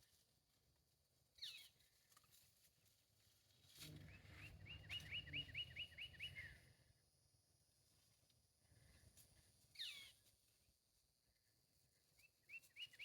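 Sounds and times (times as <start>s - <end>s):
bird singing: 4.1s - 6.6s, 12.5s - 13.0s.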